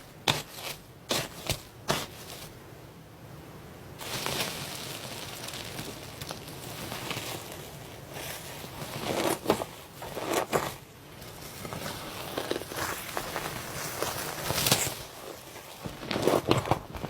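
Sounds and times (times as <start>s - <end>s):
slime crust crackling: 4.0s - 17.0s.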